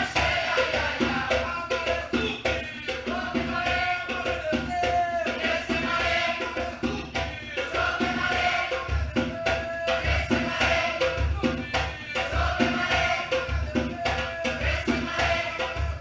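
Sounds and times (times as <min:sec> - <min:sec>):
samba percussion ensemble playing: 0:00.0 - 0:16.0.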